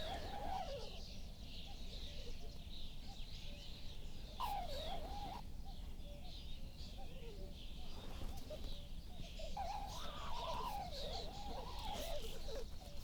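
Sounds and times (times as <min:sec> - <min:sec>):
birds chirping: 0:08.7 - 0:13.0.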